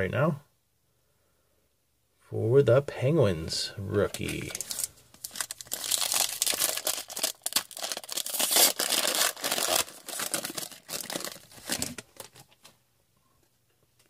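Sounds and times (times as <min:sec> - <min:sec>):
foil wrapper crinkling: 0:04.1 - 0:12.7.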